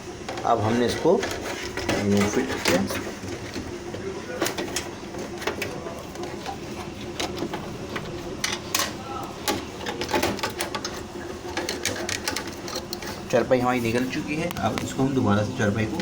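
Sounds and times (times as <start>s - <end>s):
computer hardware clicks and knocks: 4.4s - 13.2s.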